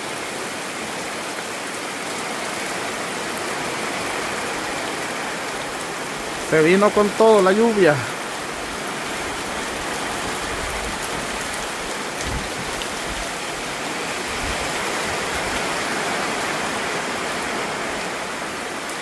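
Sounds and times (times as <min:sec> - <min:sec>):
heavy rain pouring: 0:00.0 - 0:19.0.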